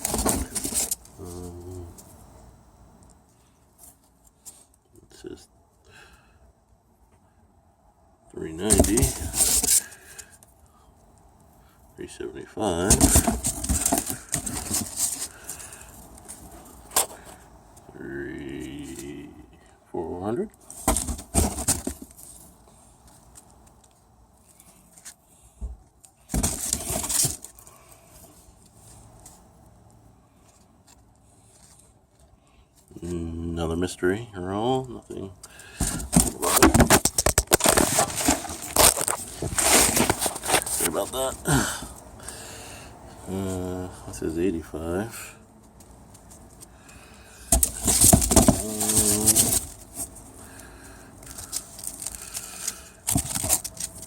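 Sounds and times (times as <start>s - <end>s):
rustling and clatter: 0.0s - 2.2s, 8.6s - 10.5s, 12.8s - 17.4s, 20.6s - 29.4s, 35.8s - 42.0s, 47.4s - 54.0s
packaging crinkling and rustling: 35.8s - 41.4s, 51.2s - 54.0s.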